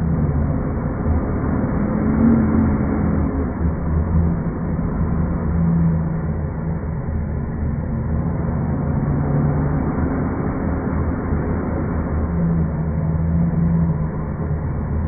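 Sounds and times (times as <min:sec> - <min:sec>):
wind howling through tunnel: 0:00.0 - 0:15.0.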